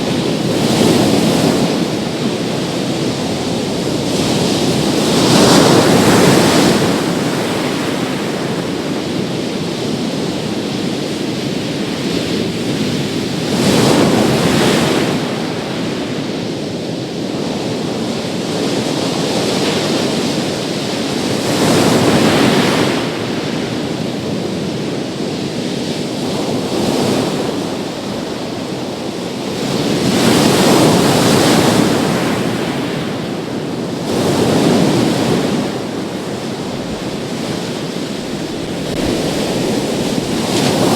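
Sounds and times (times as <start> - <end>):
sea waves crashing: 0.0 - 11.6, 26.6 - 40.9
steady wash of surf: 0.0 - 40.9.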